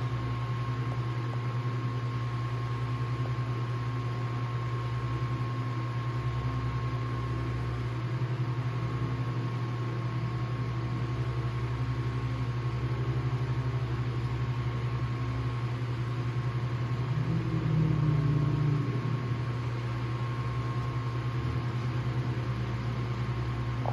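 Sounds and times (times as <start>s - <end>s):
electric fan motor humming: 0.0s - 23.9s
fan cage vibrating: 15.4s - 23.9s
fan blades moving air: 16.8s - 23.9s.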